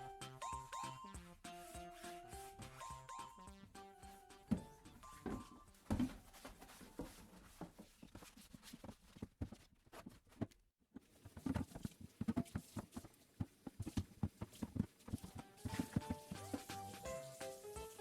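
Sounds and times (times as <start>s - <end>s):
household items tapping and clicking: 10.4s - 17.3s.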